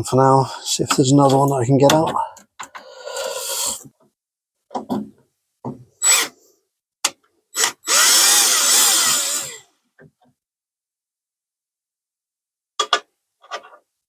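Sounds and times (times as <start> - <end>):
power drill whining: 3.0 - 3.8, 6.0 - 6.3, 7.5 - 9.7.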